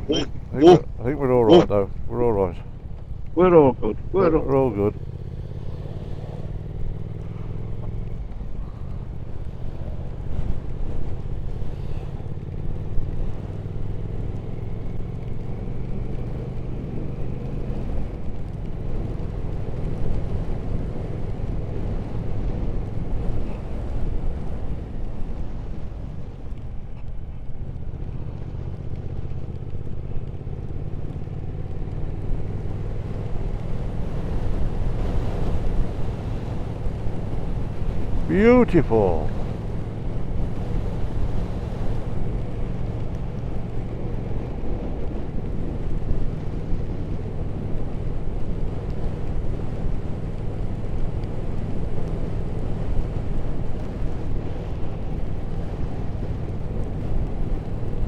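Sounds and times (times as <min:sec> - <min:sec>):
wind and road noise: 0:00.0 - 0:58.0
motorcycle engine running: 0:04.9 - 0:19.7.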